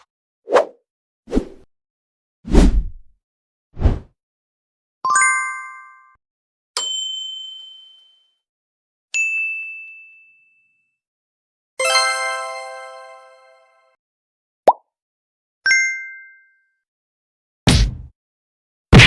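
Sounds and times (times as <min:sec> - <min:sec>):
bell-like dings: 0:06.8 - 0:08.4, 0:09.2 - 0:11.0, 0:15.7 - 0:16.8.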